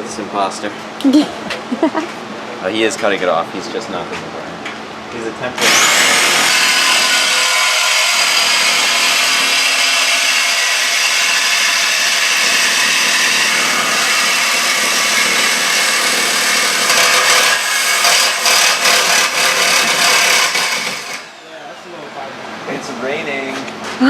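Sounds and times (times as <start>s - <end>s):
power cutting tool grinding steel: 5.6s - 21.4s.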